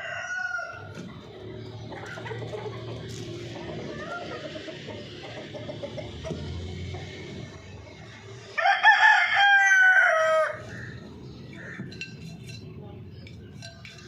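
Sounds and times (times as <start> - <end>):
rooster crowing: 0.0 - 0.9, 8.6 - 10.7.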